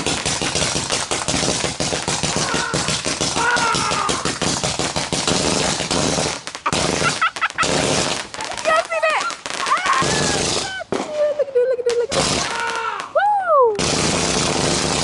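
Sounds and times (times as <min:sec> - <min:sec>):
fireworks crackling pops: 0:00.0 - 0:15.0.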